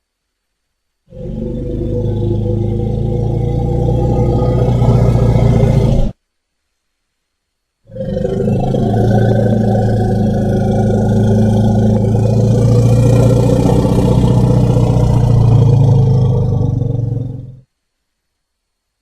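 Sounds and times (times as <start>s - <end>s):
low steady drone: 1.1s - 6.2s, 7.9s - 17.7s.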